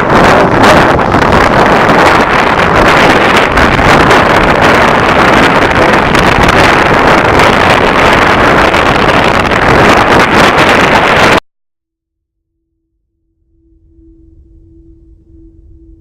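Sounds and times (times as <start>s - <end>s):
wind buffeting microphone: 0.0s - 11.4s.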